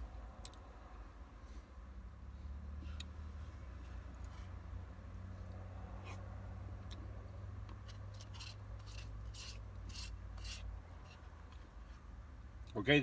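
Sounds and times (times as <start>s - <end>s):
spoon scraping ice cream cup: 7.7s - 12.0s.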